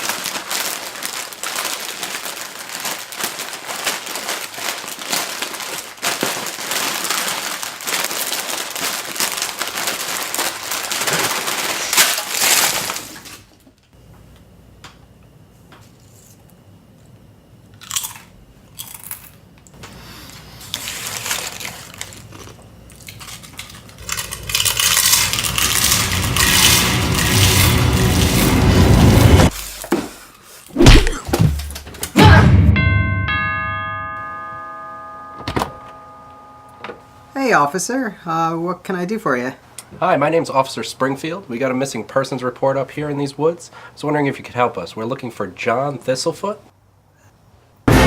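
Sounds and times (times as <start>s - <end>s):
crinkling and crunching: 0.0s - 13.9s, 17.8s - 32.1s.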